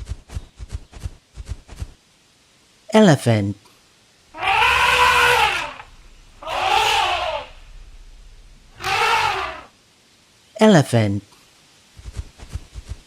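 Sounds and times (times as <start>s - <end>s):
elephant trumpeting: 4.4s - 9.7s.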